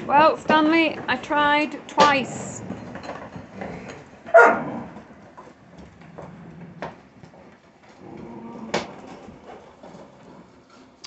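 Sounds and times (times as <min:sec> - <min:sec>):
puppy barking: 0:04.3 - 0:04.9.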